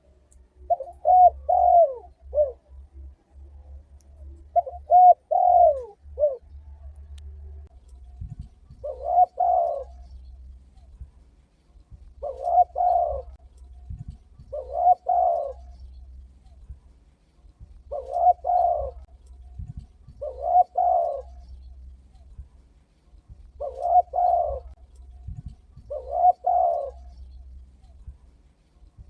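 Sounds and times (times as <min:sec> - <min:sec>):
dove cooing: 0:00.0 - 0:03.1, 0:04.2 - 0:07.0, 0:08.3 - 0:11.0, 0:12.0 - 0:16.6, 0:17.7 - 0:21.9, 0:23.4 - 0:28.0.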